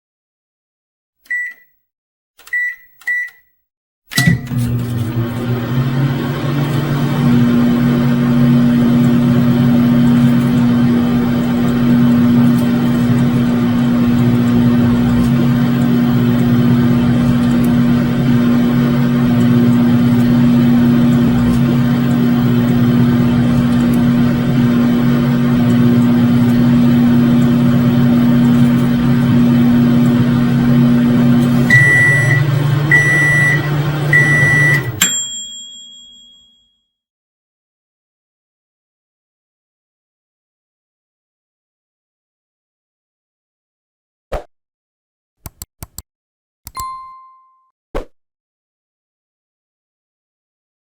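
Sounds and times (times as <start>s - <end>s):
microwave beeps: 1.3s - 1.8s, 2.4s - 12.8s, 15.8s - 36.8s, 46.7s - 47.7s
bell ding: 4.2s - 4.6s, 35.0s - 36.9s, 46.7s - 47.7s
microwave oven humming: 4.2s - 35.9s.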